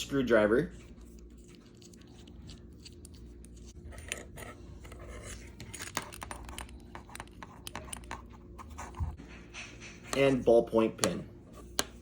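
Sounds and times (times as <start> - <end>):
metal pen clicks and scrapes: 1.0 - 9.0.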